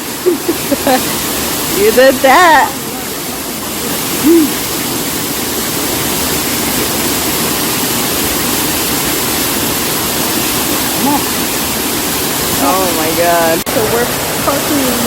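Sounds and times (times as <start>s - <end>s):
waterfall rushing: 0.0s - 15.0s
hoot-like voice call: 3.9s - 4.7s, 11.0s - 11.4s.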